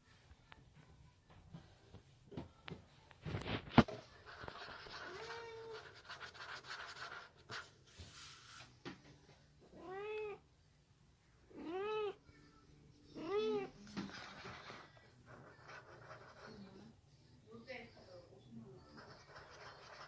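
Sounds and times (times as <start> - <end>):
cat meowing: 9.7 - 10.4, 11.5 - 12.3.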